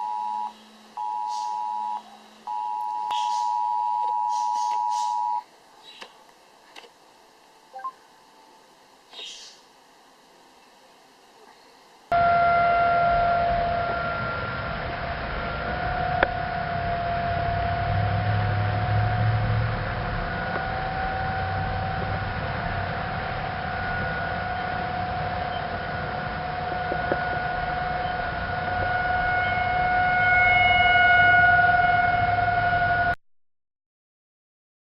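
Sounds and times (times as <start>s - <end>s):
tornado warning siren wailing: 0.0s - 5.4s, 12.1s - 33.2s.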